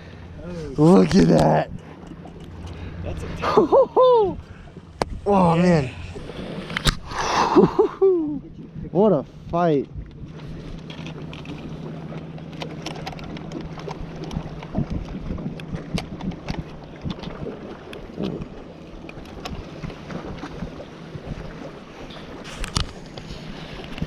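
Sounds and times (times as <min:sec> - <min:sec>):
low steady hum: 0:00.0 - 0:24.0
water around a boat: 0:00.0 - 0:24.0
wind on microphone: 0:14.0 - 0:18.6.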